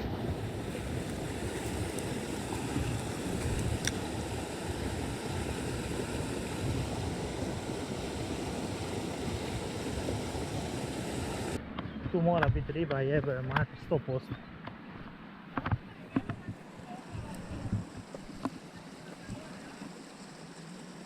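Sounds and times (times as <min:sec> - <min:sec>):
stream water rushing: 0:00.0 - 0:11.6.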